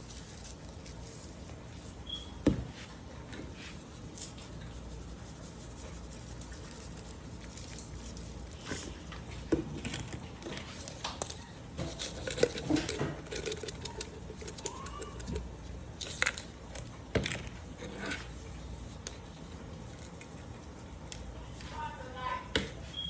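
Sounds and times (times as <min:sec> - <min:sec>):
spice containers clicking and rustling: 0:09.6 - 0:17.5.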